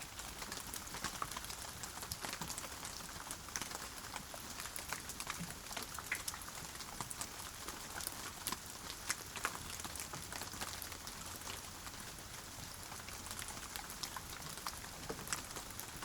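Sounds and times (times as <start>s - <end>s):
raindrops ticking on a surface: 0.0s - 16.0s
steady rain falling: 0.0s - 16.0s.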